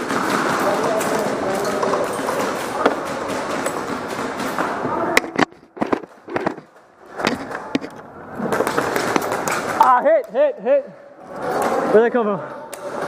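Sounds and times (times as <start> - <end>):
indistinct voices: 0.0 - 6.0.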